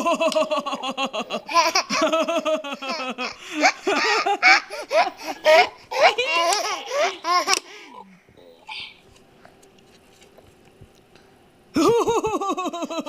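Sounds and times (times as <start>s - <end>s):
baby laughing: 0.0s - 7.7s.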